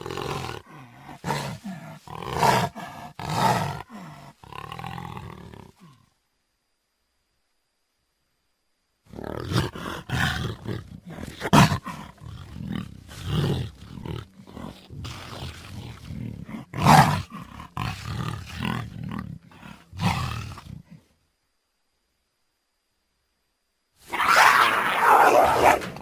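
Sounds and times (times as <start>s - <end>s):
jaguar roaring: 0.0s - 6.0s, 9.1s - 21.0s, 24.1s - 26.0s.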